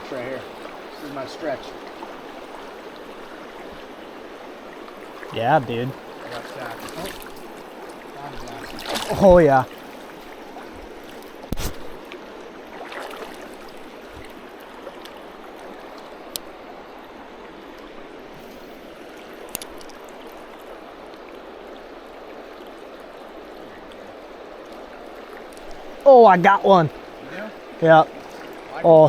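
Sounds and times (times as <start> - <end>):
creek water flowing: 0.0 - 29.0
faint clicks: 19.4 - 20.4.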